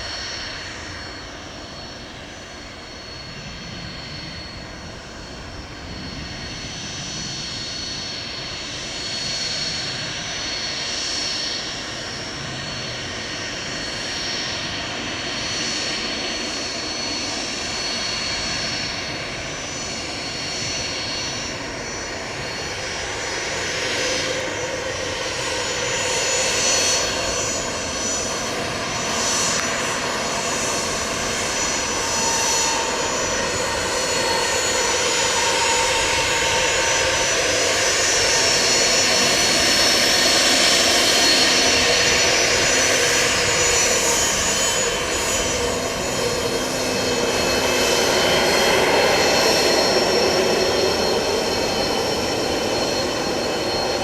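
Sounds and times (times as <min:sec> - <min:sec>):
jet engines whining: 0:00.0 - 0:54.0.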